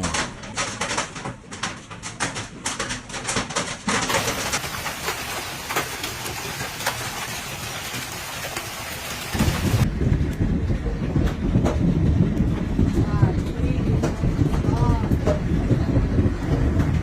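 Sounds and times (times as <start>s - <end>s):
hailstones pounding: 0.0s - 17.0s.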